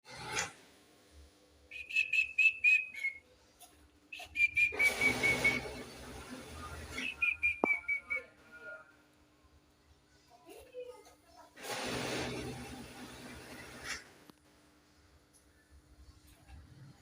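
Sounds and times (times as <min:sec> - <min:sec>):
songbird whistled notes: 0:01.7 - 0:03.2, 0:04.1 - 0:05.8, 0:06.9 - 0:08.3.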